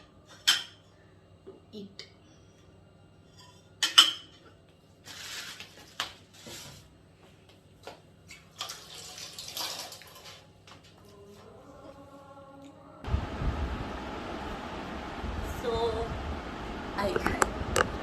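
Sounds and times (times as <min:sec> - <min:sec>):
water splashing in spurts: 0:08.5 - 0:10.5.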